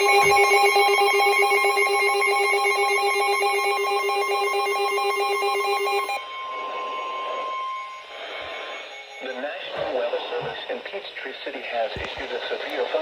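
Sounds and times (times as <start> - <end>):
fast-pulsing ringing alarm: 0.0 - 10.3.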